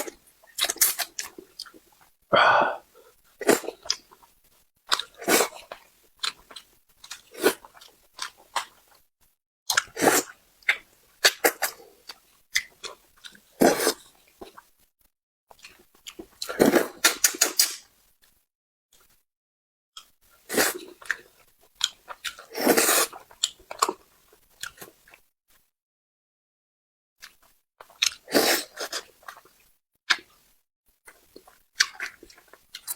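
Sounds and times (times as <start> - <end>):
wet chewing and biting: 0.4 - 2.1, 4.9 - 9.0, 27.2 - 30.5, 31.1 - 32.9.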